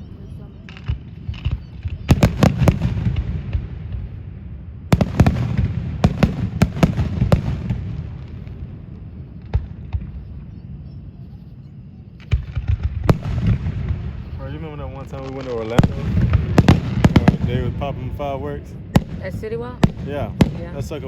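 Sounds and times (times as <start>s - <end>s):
continuous low rumble: 0.0s - 21.0s
fireworks bursting: 0.0s - 21.0s.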